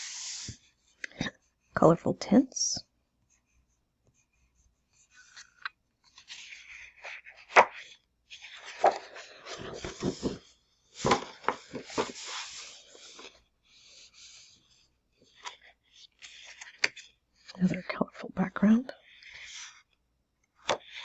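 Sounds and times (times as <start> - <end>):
paper rustling and sliding: 0.0 - 1.3, 5.1 - 17.1, 20.7 - 21.0.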